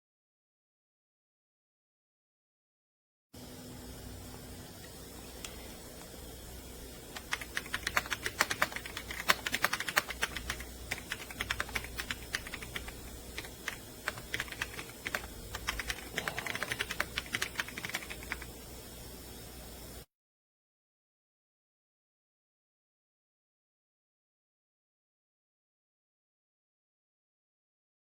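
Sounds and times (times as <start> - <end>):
mechanical keyboard typing: 7.1 - 18.5.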